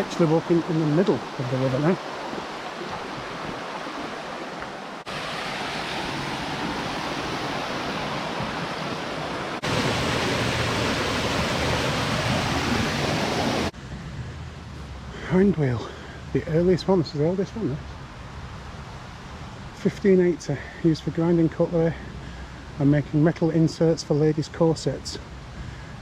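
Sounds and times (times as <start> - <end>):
river water rushing: 0.0 - 13.8.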